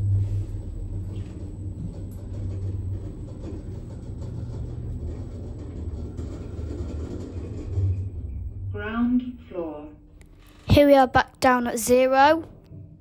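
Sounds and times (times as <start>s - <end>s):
lift car hum and rumble: 0.0s - 10.2s.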